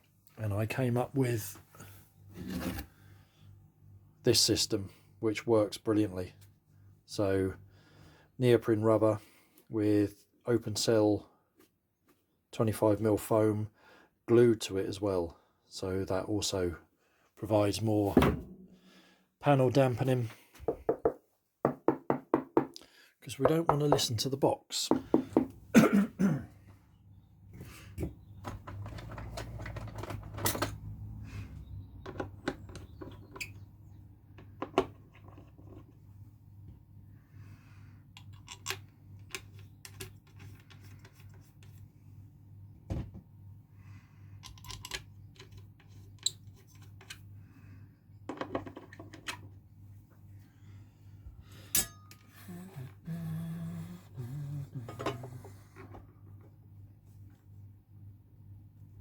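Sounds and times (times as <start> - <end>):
small parts and tools clinking: 38.2 - 41.7, 44.4 - 47.2.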